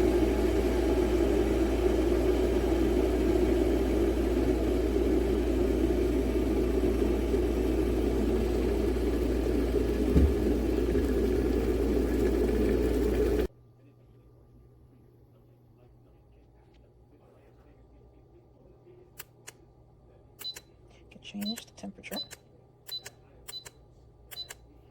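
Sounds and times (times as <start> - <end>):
electric kettle heating water: 0.0 - 13.5
brief knock: 10.1 - 10.5.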